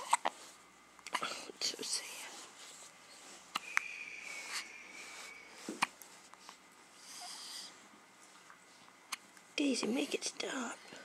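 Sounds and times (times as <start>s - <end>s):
baby hiccuping: 0.0s - 0.3s
soft breaths: 0.2s - 11.0s.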